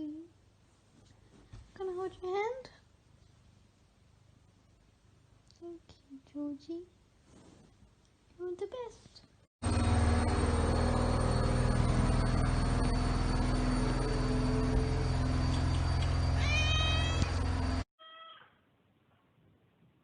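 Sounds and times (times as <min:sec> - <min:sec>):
loud steady low hum: 0:09.6 - 0:17.8
cat miaowing: 0:16.4 - 0:17.3.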